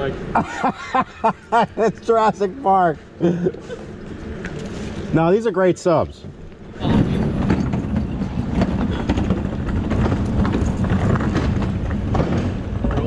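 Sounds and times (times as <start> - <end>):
heavy cabinets rolling on casters: 5.1 - 13.0
wheels clacking and rattling: 6.1 - 13.0.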